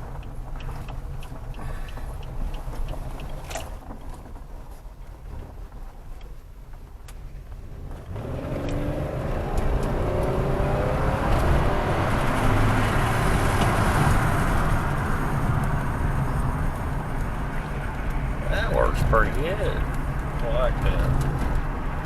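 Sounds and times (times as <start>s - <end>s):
road and tyre noise: 0.0s - 22.0s
car engine accelerating: 7.5s - 22.0s.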